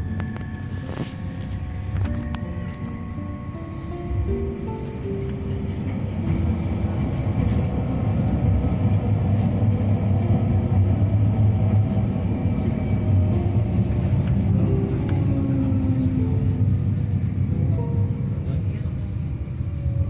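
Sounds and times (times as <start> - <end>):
train rumbling on rails: 0.0 - 20.0.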